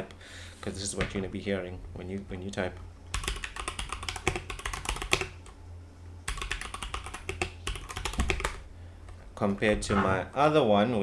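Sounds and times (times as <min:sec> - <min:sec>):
mechanical keyboard typing: 0:03.1 - 0:05.6, 0:06.3 - 0:08.6.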